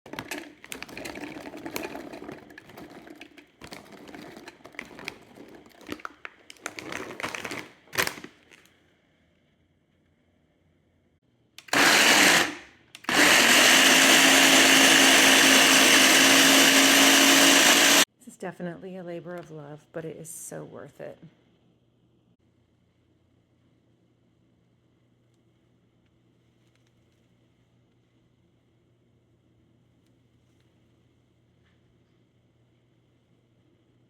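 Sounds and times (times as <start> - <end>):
blender whirring: 0.0 - 8.2, 11.6 - 18.1
kitchen clicks and rustles: 0.0 - 8.7.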